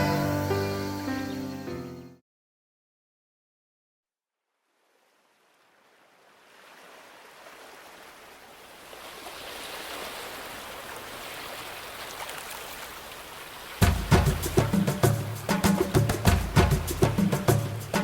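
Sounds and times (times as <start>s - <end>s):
running water rushing: 4.6s - 18.0s.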